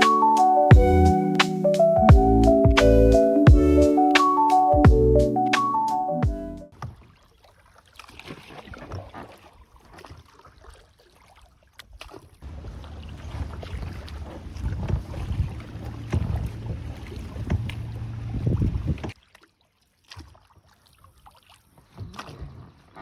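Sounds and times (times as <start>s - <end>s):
water splashing around raft: 6.7s - 23.0s
wind buffeting microphone: 12.4s - 19.2s.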